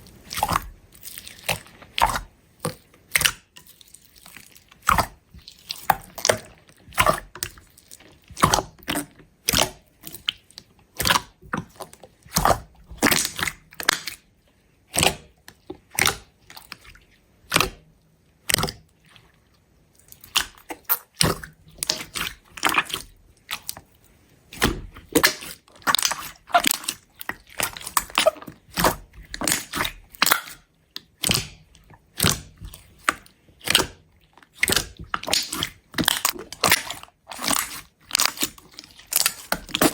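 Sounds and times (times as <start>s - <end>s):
slime crackling and popping: 24.6s - 39.9s.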